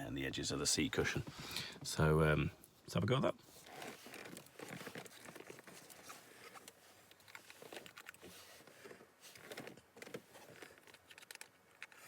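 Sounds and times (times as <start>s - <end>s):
rustling and crinkling: 2.6s - 12.0s
small clicks of objects handled: 4.1s - 12.0s.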